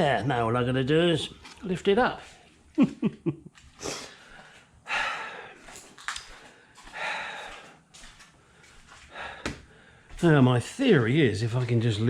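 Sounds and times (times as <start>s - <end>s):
man straining and breathing hard: 3.8s - 5.8s, 6.4s - 7.9s, 8.5s - 10.2s.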